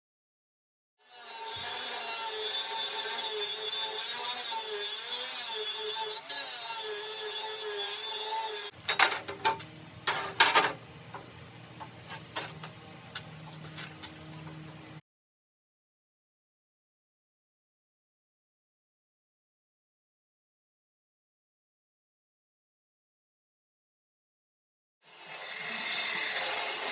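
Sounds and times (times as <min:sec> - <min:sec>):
power tool running: 0:25.1 - 0:26.9.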